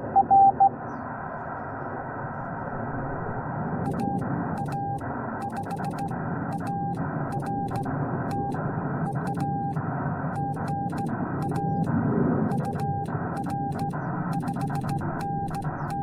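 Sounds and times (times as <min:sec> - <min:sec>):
morse code sidetone beeps: 0:00.0 - 0:00.7, 0:03.9 - 0:11.9, 0:12.5 - 0:16.0.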